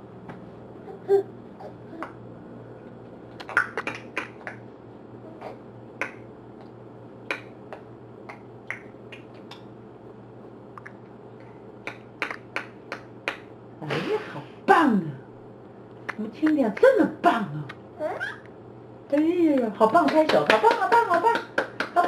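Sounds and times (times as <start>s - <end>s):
baby clicking tongue and lips: 3.4s - 4.6s.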